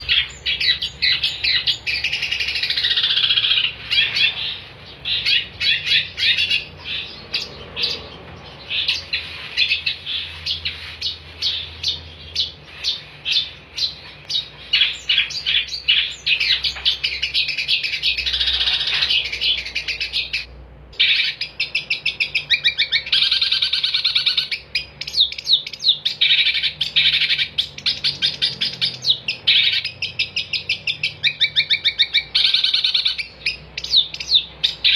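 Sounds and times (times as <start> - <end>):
bird singing chattering notes: 0.0 - 34.9.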